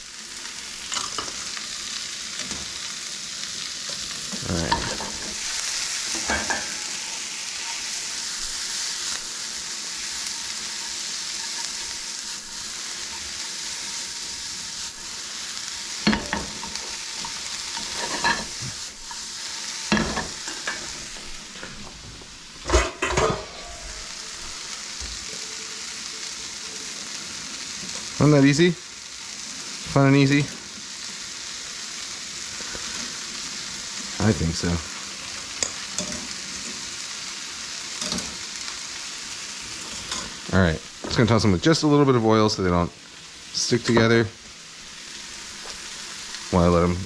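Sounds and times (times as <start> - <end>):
vegetables sizzling in a skillet: 0.0 - 47.0
utensils clinking on cookware: 4.6 - 7.9, 15.9 - 19.3, 19.9 - 22.0, 22.6 - 24.1, 35.6 - 36.4, 38.0 - 38.4.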